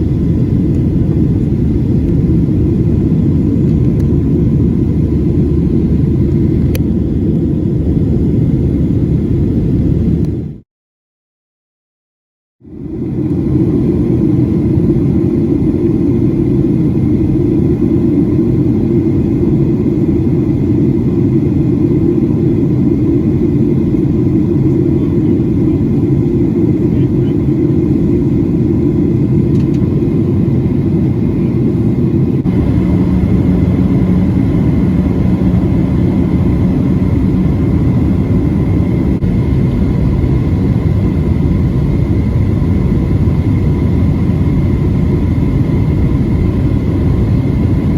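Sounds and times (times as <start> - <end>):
airplane cabin rumble: 0.0 - 10.6, 12.7 - 47.9
faint steady whine: 30.9 - 47.9
low steady hum: 32.2 - 47.9.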